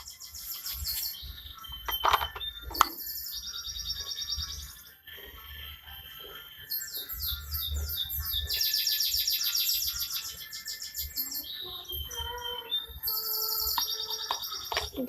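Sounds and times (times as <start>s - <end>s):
songbird singing: 6.9s - 15.0s.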